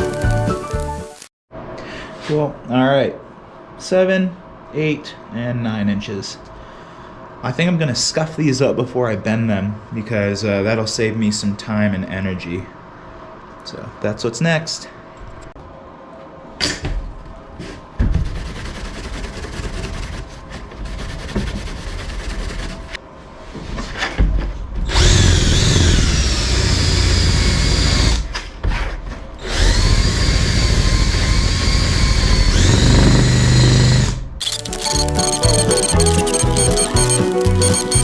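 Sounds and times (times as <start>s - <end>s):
power tool whining: 29.4s - 38.0s
background music with beat: 34.7s - 38.0s.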